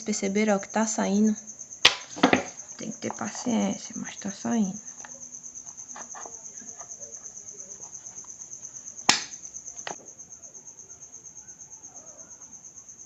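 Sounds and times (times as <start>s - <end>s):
cricket chirping: 0.0s - 13.0s.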